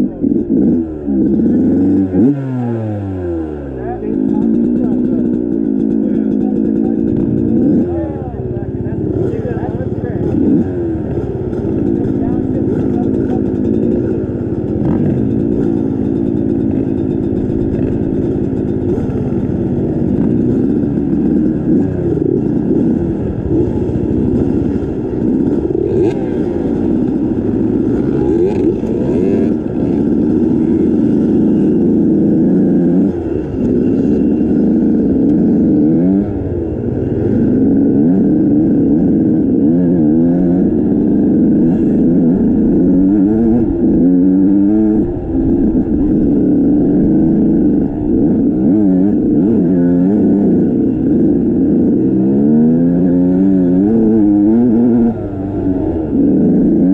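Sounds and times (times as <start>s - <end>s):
motorcycle engine revving: 0.0s - 56.9s.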